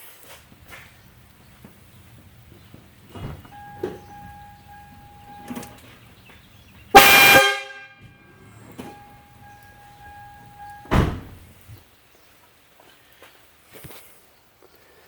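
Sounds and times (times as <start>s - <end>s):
air horn blast: 0.6s - 10.9s.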